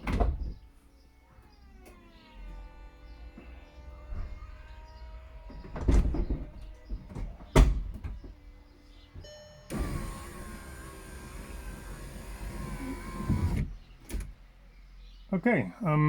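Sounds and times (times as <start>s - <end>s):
heavy roof clunks: 4.0s - 8.4s
electric whine of hydraulic pump: 9.7s - 13.7s.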